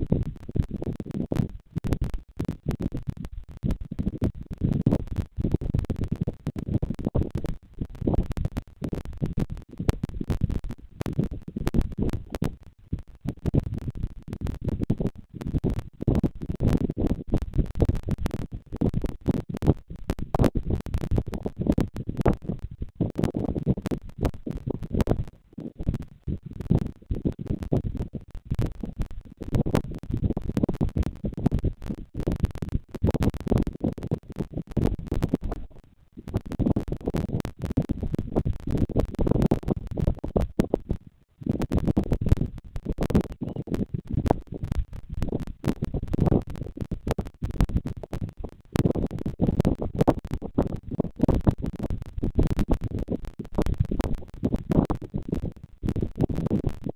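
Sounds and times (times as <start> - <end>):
crackles and scratches on microphone: 0.0 - 56.9.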